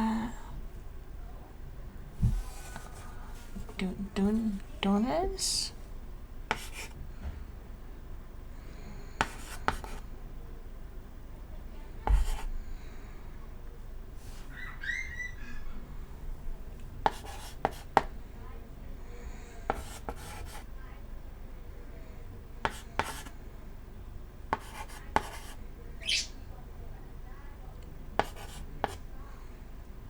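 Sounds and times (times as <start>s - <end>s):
chalk scratching on chalkboard: 2.3s - 3.7s, 6.5s - 6.9s, 9.2s - 10.0s, 12.0s - 12.5s, 17.0s - 18.1s, 19.7s - 20.7s, 22.6s - 23.3s, 24.5s - 25.6s, 28.2s - 29.0s
chalk tapping board: 6.5s - 6.9s, 9.2s - 10.0s, 12.0s - 12.5s, 17.0s - 18.1s, 19.7s - 20.6s, 22.6s - 23.3s, 24.5s - 25.6s, 28.2s - 29.0s
bird chirp: 14.5s - 15.8s, 26.0s - 26.4s.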